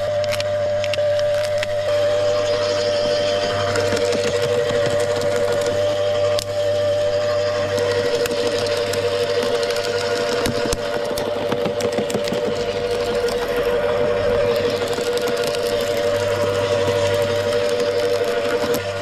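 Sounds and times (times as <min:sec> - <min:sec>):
wood chipper running: 0:00.0 - 0:19.0
branches clicking and knocking: 0:00.1 - 0:01.9, 0:07.7 - 0:19.0.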